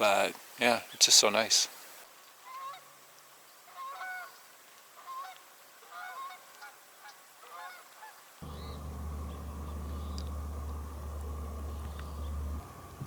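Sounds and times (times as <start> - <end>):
geese honking: 8.4 - 13.0
low hum and rumble: 8.4 - 13.0.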